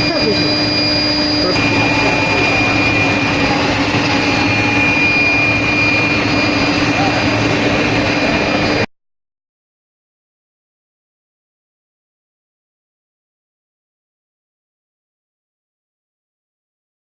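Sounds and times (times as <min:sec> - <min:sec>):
loud industrial machinery running: 0:00.0 - 0:08.9
steady high whine: 0:00.0 - 0:08.9.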